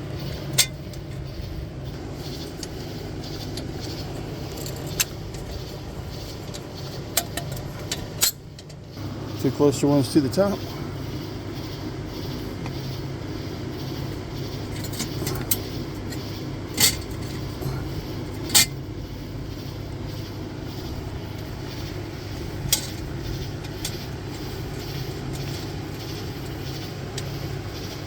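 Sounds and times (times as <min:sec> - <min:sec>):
steady low hum: 0:00.0 - 0:28.0
metal bolts clinking: 0:00.2 - 0:01.3, 0:02.0 - 0:09.0, 0:14.1 - 0:19.0, 0:21.0 - 0:28.0.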